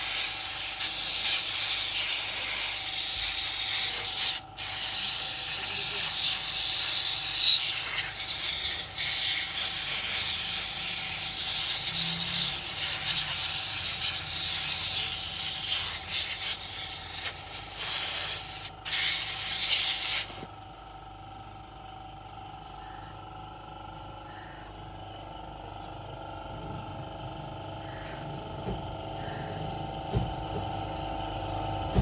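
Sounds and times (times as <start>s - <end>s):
high-pressure jet hissing: 0.0s - 20.5s.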